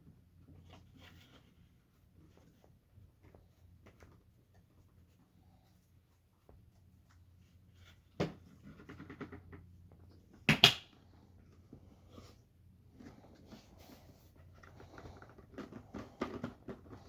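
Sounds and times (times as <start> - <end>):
plastic canister knocking and clattering: 8.2 - 9.7
plastic canister rattling: 14.6 - 17.0.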